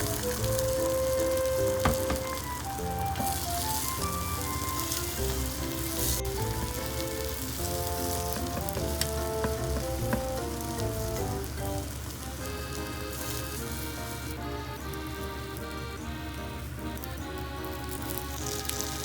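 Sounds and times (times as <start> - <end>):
oil sizzling in a pan: 0.0 - 14.2
instrumental background music: 0.0 - 19.0.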